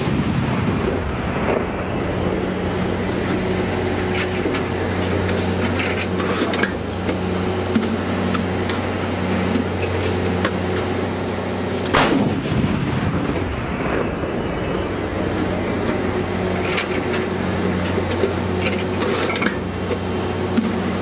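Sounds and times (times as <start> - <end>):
vehicle engine running: 0.0 - 21.0
loud bang: 11.9 - 15.2.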